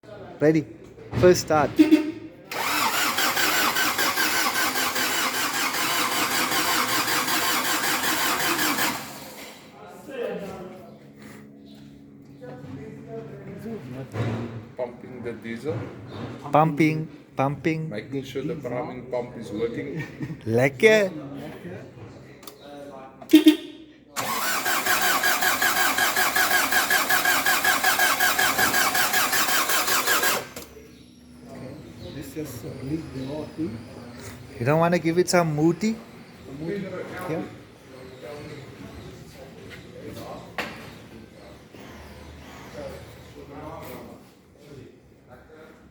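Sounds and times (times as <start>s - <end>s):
diesel engine cranking: 1.5s - 9.7s, 23.4s - 31.5s.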